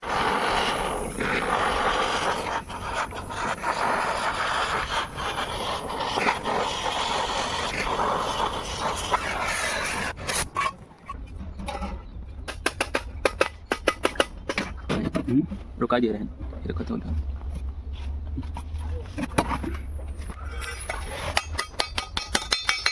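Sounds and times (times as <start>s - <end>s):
arc welding crackle: 0.0s - 10.2s.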